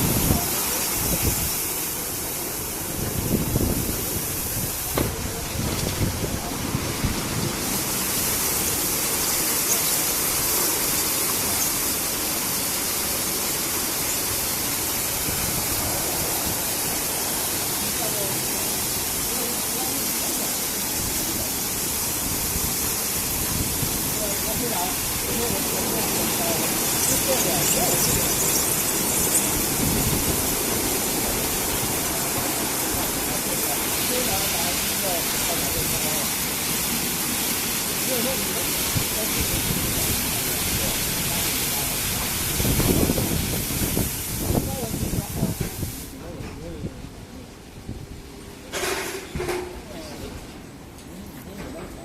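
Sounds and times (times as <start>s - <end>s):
car wash water spraying: 0.0s - 46.2s.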